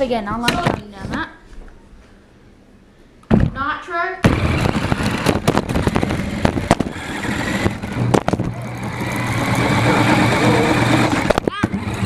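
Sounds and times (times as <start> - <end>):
motor whine: 4.3 - 12.0
rattling knocks over ground: 7.6 - 8.6.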